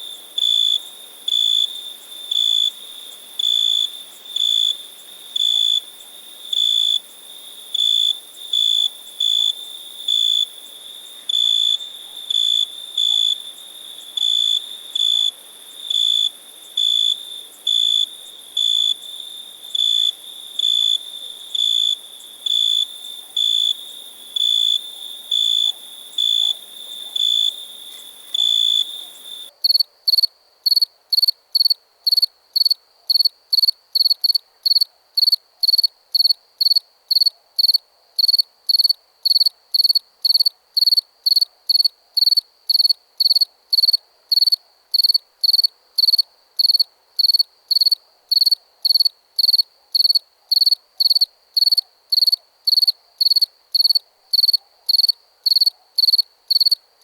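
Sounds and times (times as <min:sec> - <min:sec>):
faint hiss: 0:00.0 - 0:29.5
cricket chirping: 0:00.0 - 0:57.0.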